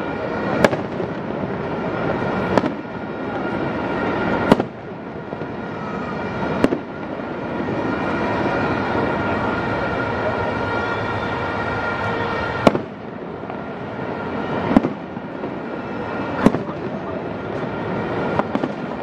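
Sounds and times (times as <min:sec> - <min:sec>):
fireworks din: 0:00.0 - 0:19.0
firework shells bursting: 0:04.2 - 0:05.6, 0:06.2 - 0:07.2.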